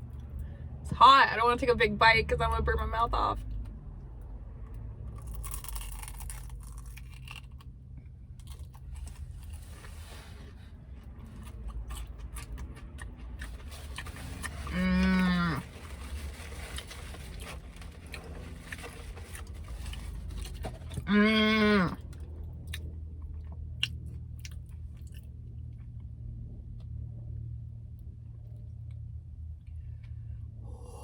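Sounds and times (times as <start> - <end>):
woman burping loudly: 21.1 - 22.0.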